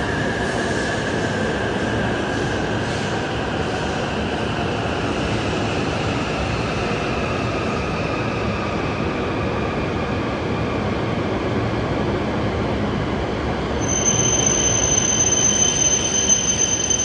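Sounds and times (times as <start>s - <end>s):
train rumbling with falling whine: 0.0s - 17.0s
brake squeal: 13.8s - 17.0s.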